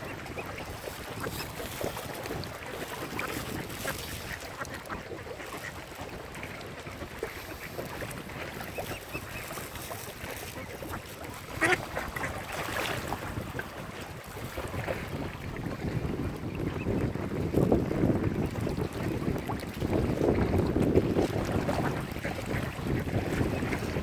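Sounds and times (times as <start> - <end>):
ducks quacking: 0.0 - 12.8.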